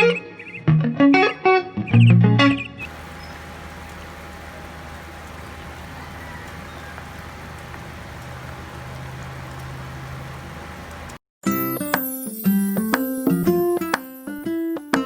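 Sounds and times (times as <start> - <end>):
chicken wings sizzling in oil: 2.9 - 11.2.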